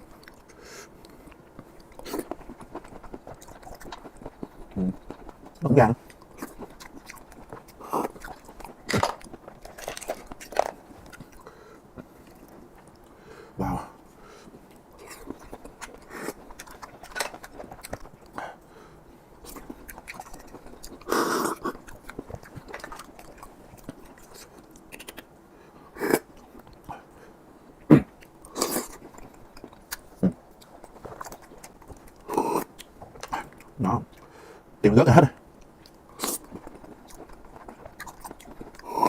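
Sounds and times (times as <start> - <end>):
close chewing wet clicks: 0.1 - 13.2, 14.7 - 18.4, 19.4 - 25.4, 28.1 - 34.3, 35.4 - 39.0.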